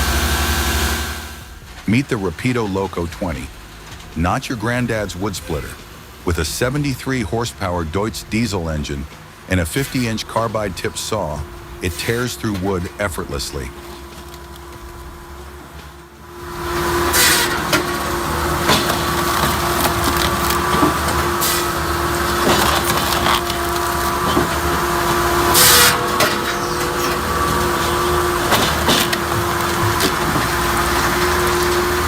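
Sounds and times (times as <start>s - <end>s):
diesel engine and hydraulics: 0.0s - 32.0s
wood cracking and splintering: 16.6s - 32.0s.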